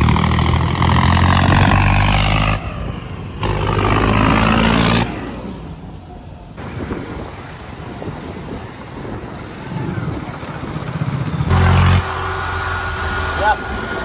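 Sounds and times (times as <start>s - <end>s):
tractor diesel engine running: 0.0s - 14.0s.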